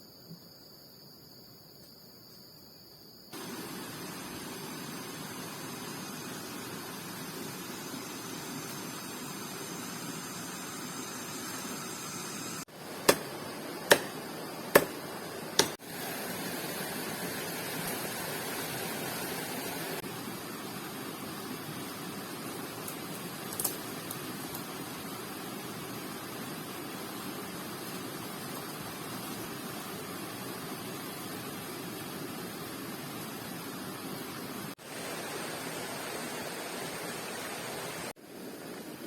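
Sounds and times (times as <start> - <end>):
crickets chirping: 0.0 - 39.0
sharp knocks: 13.0 - 13.3, 13.9 - 15.0, 15.6 - 15.8.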